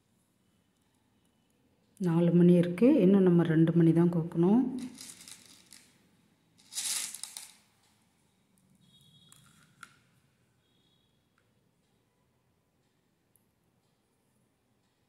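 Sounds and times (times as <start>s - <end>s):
faint small bead clicks: 4.8s - 6.0s, 6.6s - 7.9s
beads and wire rustling: 4.8s - 7.8s.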